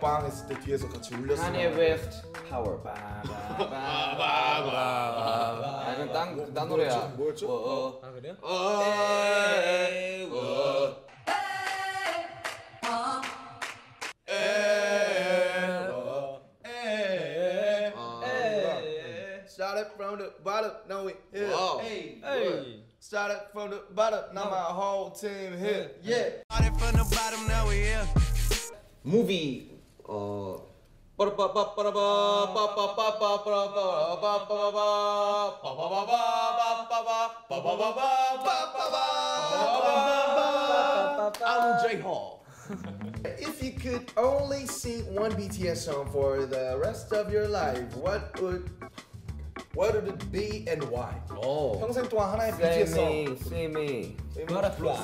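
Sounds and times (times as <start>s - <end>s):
men singing a cappella: 0.0s - 11.1s, 14.2s - 19.4s, 31.3s - 42.0s, 42.6s - 44.2s, 52.3s - 55.0s.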